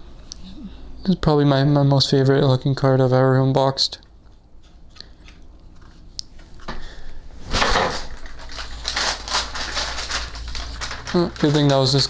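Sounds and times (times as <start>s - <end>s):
packaging rustling and crinkling: 7.5s - 12.0s.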